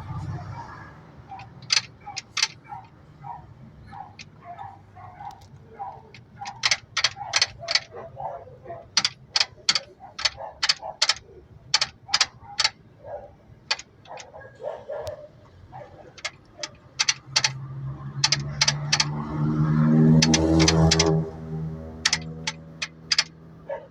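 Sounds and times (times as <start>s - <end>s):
ball joint clicking and knocking: 1.3s - 3.0s, 3.9s - 4.6s, 5.2s - 8.0s, 8.8s - 12.8s, 13.6s - 14.4s, 16.0s - 21.3s, 21.9s - 23.4s.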